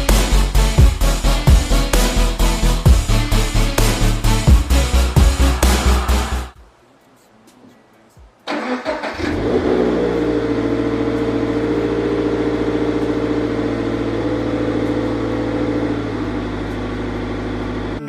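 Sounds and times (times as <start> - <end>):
car engine running: 9.2 - 18.0.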